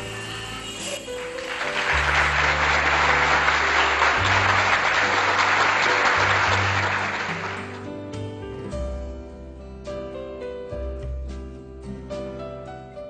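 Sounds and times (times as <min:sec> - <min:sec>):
music with sustained bass notes: 0:00.0 - 0:13.0
applause: 0:00.8 - 0:07.9.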